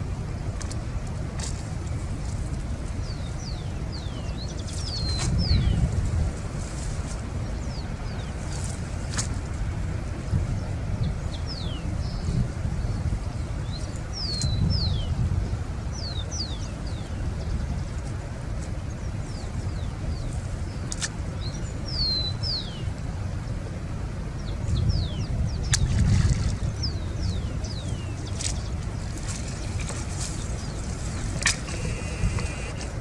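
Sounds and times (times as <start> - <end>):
wind rumble on microphone: 0.0 - 33.0
birds chirping: 2.9 - 6.0, 7.0 - 9.3, 10.6 - 15.2, 15.9 - 18.0, 18.9 - 23.0, 26.6 - 33.0.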